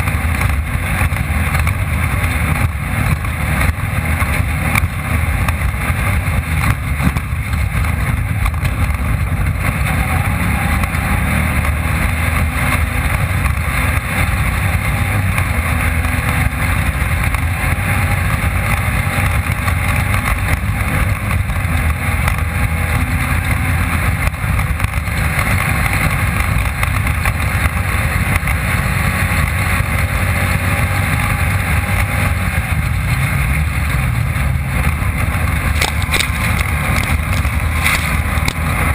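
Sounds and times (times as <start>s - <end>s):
race car engine running: 0.0s - 38.9s
terrain noise: 0.0s - 38.9s.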